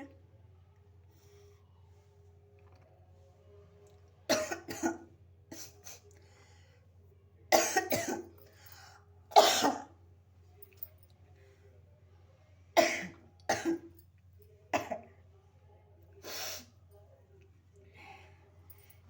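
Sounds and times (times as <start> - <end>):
woman coughing: 4.3 - 5.9, 7.5 - 8.3, 9.4 - 9.9, 12.8 - 13.9, 14.7 - 15.1.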